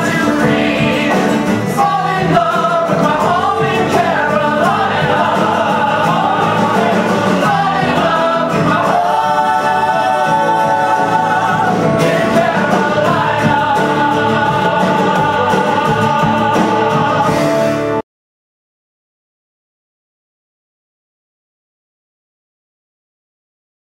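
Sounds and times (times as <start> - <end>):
ensemble of voices singing: 0.0 - 18.0
folk-rock band accompaniment: 0.0 - 18.0.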